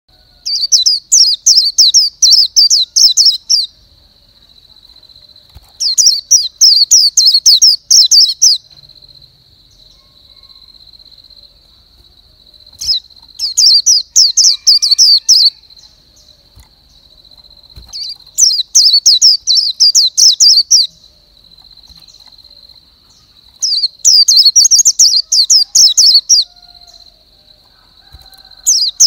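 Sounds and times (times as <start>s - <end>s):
bird whistling song: 0.4s - 3.8s, 5.6s - 8.7s, 12.7s - 27.1s.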